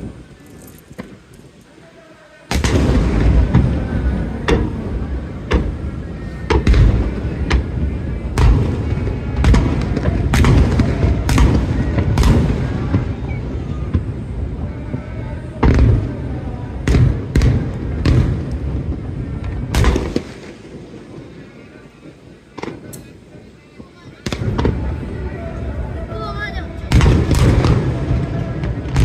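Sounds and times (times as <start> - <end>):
fireworks bangs: 0.0 - 29.0.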